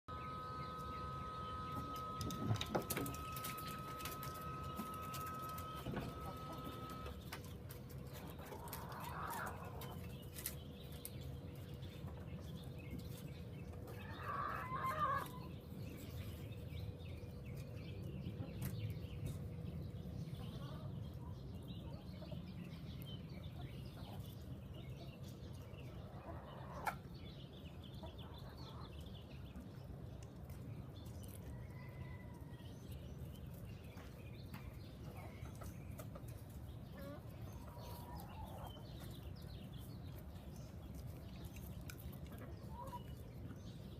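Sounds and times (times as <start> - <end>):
steady hum: 0.1 - 7.3
chickens clucking: 0.1 - 43.9.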